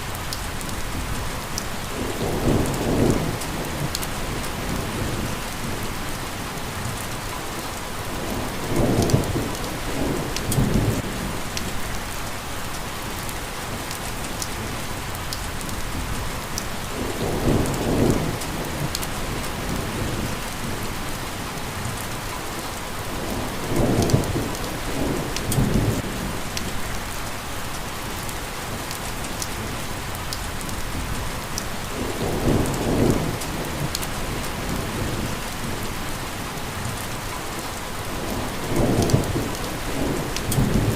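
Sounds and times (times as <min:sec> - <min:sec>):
steady rain falling: 0:00.0 - 0:40.9
thunder rumbling: 0:17.0 - 0:21.1, 0:32.0 - 0:36.2, 0:38.1 - 0:40.9.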